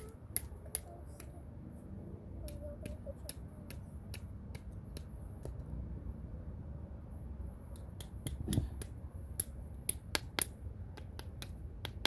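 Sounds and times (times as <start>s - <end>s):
hammer tapping on rock: 7.8s - 12.0s.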